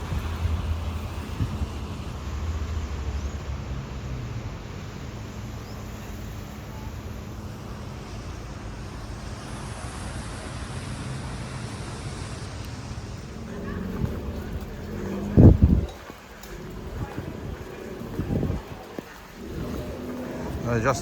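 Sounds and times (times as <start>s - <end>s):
road noise: 0.0s - 21.0s
vehicle engines rumbling: 0.0s - 21.0s.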